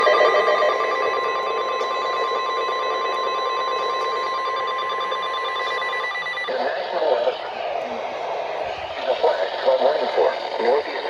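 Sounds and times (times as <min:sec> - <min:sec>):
steady alarm tone: 0:00.0 - 0:11.0
radio hiss: 0:06.4 - 0:11.0.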